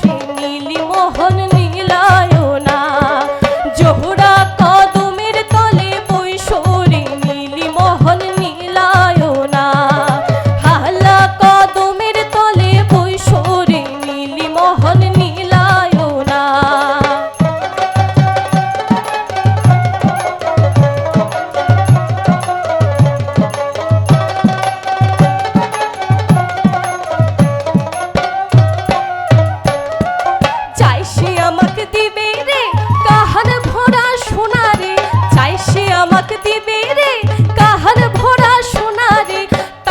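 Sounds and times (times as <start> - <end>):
drum beat: 17.7 - 31.4.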